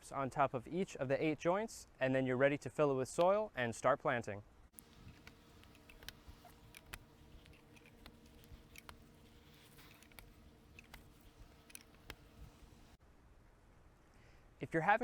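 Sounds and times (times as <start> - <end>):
low steady hum: 4.8 - 13.0
soft clicks: 4.8 - 13.0.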